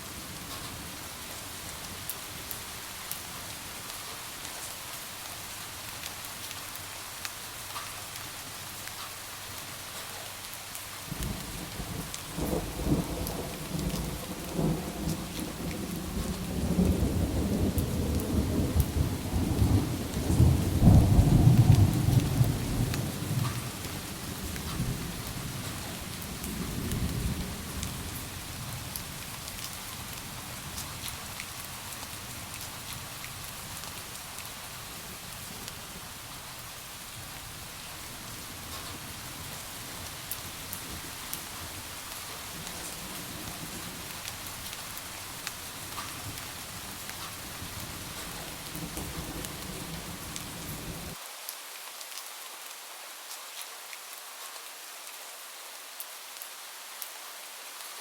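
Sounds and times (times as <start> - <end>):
steady rainfall: 0.0 - 58.0
rumble of thunder: 47.7 - 51.2.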